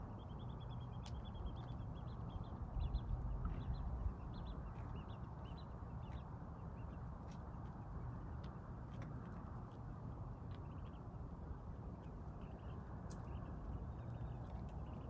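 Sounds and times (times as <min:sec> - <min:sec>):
small birds chirping: 0:00.0 - 0:08.2, 0:10.5 - 0:11.1, 0:12.0 - 0:15.0.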